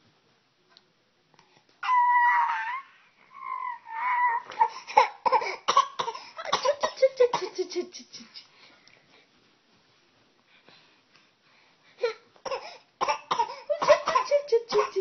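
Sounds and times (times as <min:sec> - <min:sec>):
child crying wail: 0:01.8 - 0:04.5
child fake coughing: 0:05.0 - 0:07.9, 0:12.5 - 0:15.0.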